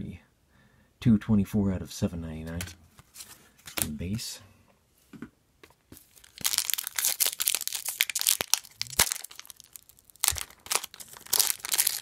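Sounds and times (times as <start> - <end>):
card wrapper crinkling and tearing: 6.0 - 12.0.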